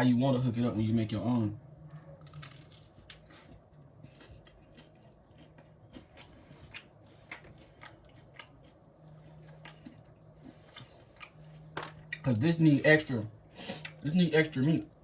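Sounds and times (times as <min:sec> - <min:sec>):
person chewing crunchy chips: 0:03.0 - 0:12.4.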